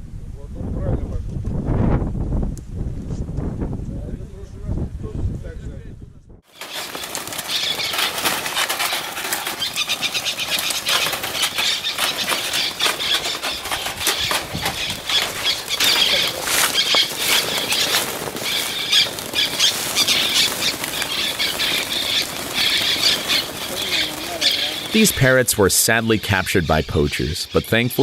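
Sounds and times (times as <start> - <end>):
wings flapping: 6.5 - 28.0
parrots screeching: 6.6 - 25.2.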